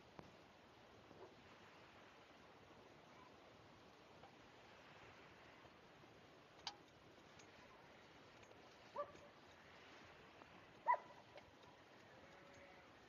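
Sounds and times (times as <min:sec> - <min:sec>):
dog barking: 0:08.9 - 0:09.3, 0:10.8 - 0:11.4.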